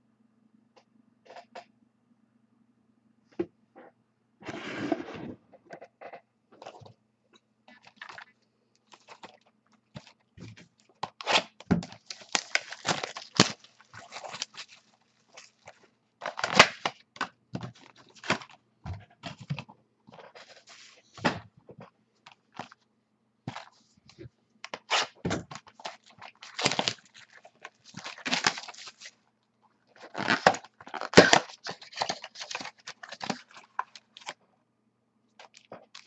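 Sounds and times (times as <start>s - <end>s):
wrapper tearing and crinkling: 11.2s - 16.9s, 24.9s - 29.2s, 30.0s - 34.4s.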